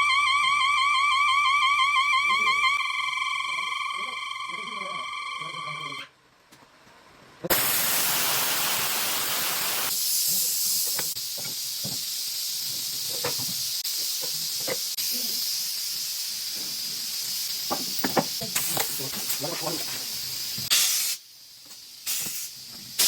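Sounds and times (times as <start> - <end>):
pressure hissing: 7.5 - 23.0.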